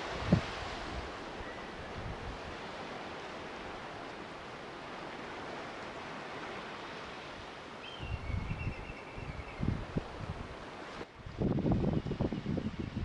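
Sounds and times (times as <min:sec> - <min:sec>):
wind gusts on microphone: 0:00.0 - 0:13.0
faint whistled bird call: 0:07.8 - 0:09.7.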